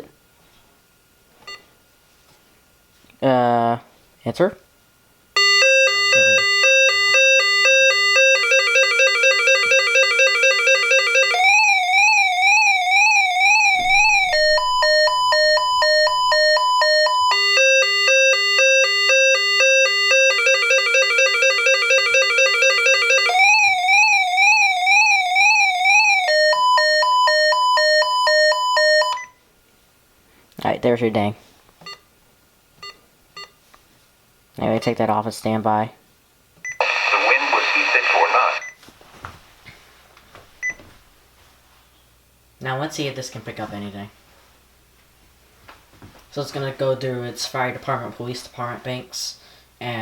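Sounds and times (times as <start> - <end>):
electronic alarm beeps and warble: 5.4 - 29.4, 36.7 - 38.8.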